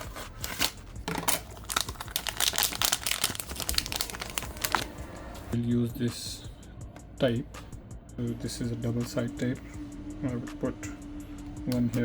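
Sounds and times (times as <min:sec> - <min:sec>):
plastic packaging crinkling: 0:00.3 - 0:05.0.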